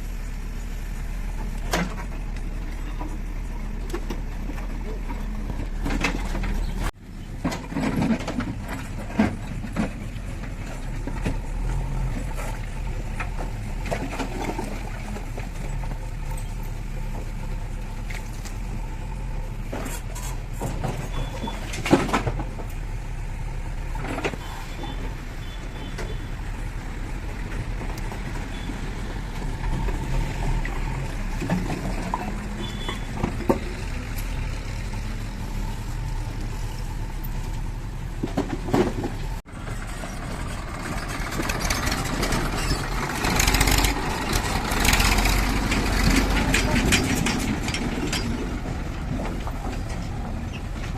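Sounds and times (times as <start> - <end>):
diesel engine running: 0.0 - 50.9
clanks and knocks: 3.9 - 11.5, 19.7 - 22.8, 29.4 - 34.1, 38.1 - 39.4, 40.8 - 50.9.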